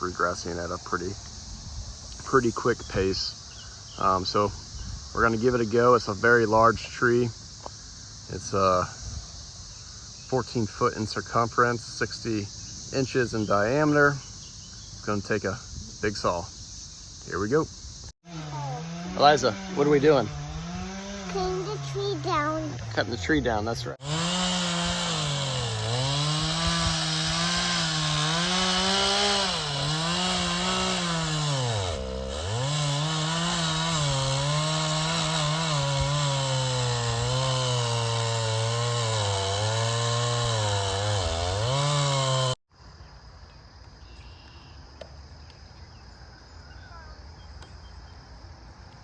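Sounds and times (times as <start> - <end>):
chainsaw cutting into tree trunk: 18.3 - 42.6.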